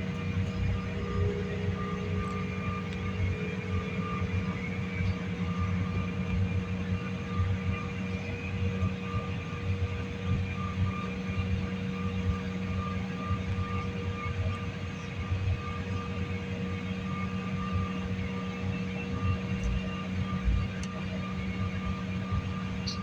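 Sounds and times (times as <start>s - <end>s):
airliner engines droning in cabin: 0.0s - 23.0s.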